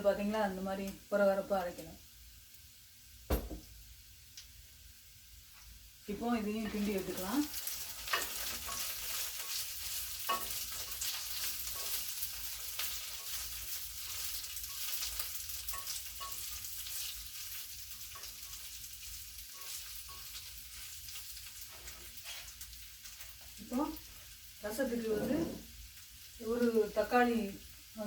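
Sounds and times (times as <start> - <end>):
beans sizzling in hot oil: 0.0 - 28.0
spatula scraping and tapping pan: 6.6 - 23.5.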